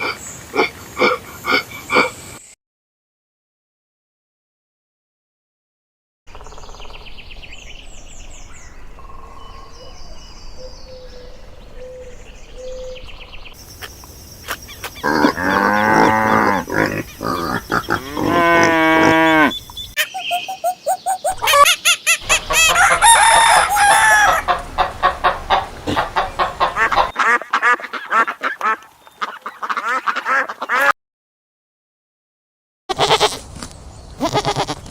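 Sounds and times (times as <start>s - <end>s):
chickens chirping: 8.9s - 30.9s
chickens clucking: 13.8s - 30.9s
rooster crowing: 21.4s - 24.9s.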